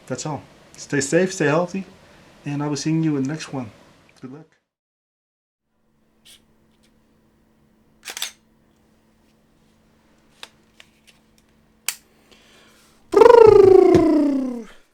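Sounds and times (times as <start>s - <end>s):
camera shutter clacking: 8.0s - 8.4s.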